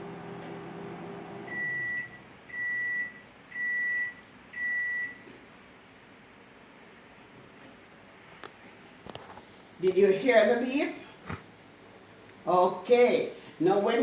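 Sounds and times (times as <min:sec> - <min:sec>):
microwave beeps: 0:00.0 - 0:05.2
microwave oven humming: 0:00.0 - 0:05.4.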